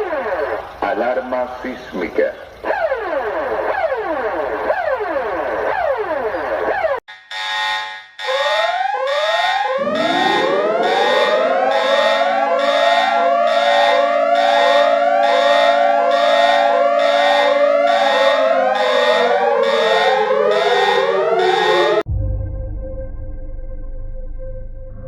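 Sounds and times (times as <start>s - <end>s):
held siren tone: 2.6s - 22.1s
rising whoop siren: 2.7s - 22.1s.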